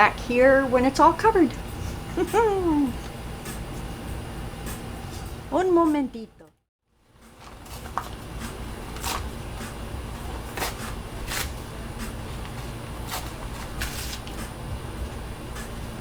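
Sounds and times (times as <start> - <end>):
steady low hum: 0.0 - 16.0
paper rustling and clicking: 12.4 - 14.4.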